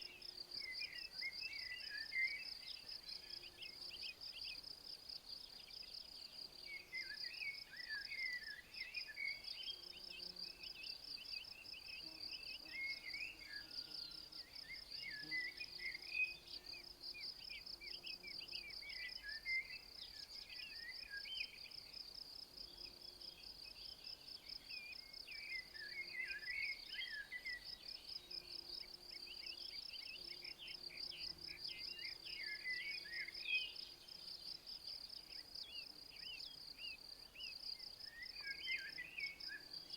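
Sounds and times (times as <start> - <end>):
insects chirping: 9.9 - 39.9.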